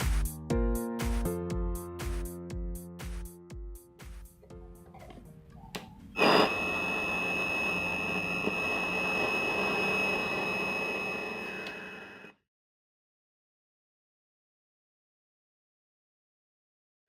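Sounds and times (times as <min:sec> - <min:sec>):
high even whistle: 0:06.2 - 0:12.3
radio static hiss: 0:06.2 - 0:12.3.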